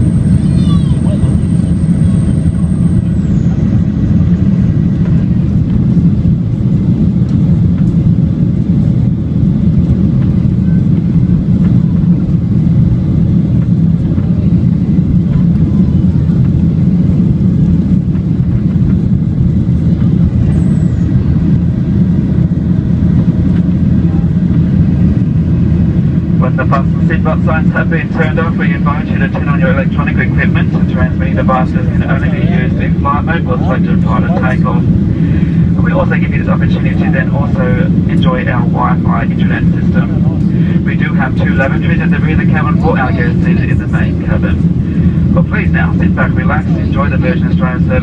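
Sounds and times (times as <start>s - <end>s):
jet engines rumbling in cabin: 0.0s - 48.0s
rushing air: 31.7s - 36.5s, 40.2s - 41.0s, 44.5s - 45.4s.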